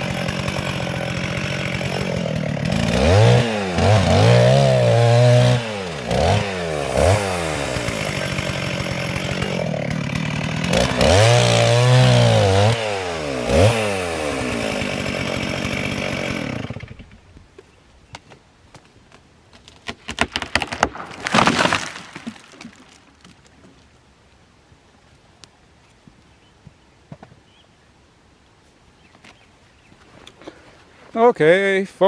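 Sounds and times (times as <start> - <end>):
chainsaw revving and idling: 0.0 - 17.2.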